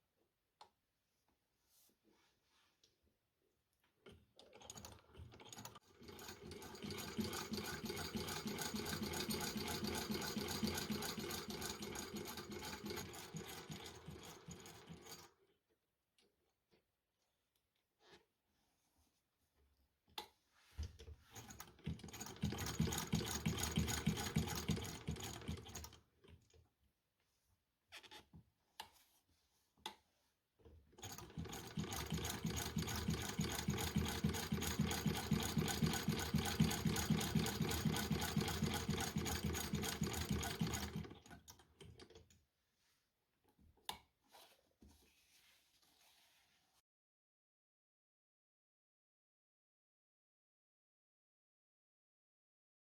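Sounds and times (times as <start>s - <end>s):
sewing machine clatter: 4.0s - 15.4s, 21.3s - 26.6s, 30.9s - 42.3s
sewing machine mechanism clicks: 21.4s - 26.4s, 31.0s - 42.3s.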